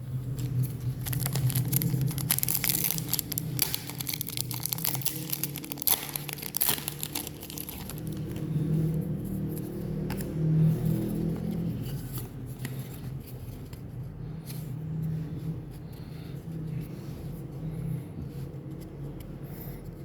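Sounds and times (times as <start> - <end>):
steady low hum: 0.0 - 20.0
foil wrapper crinkling and tearing: 0.3 - 8.4.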